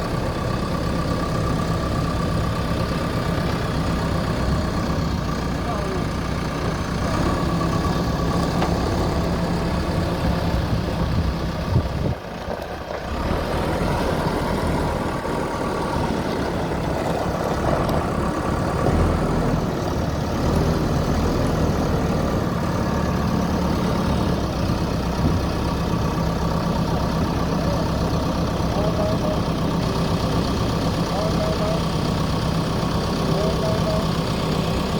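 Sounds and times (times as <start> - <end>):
diesel engine running: 0.0 - 34.9.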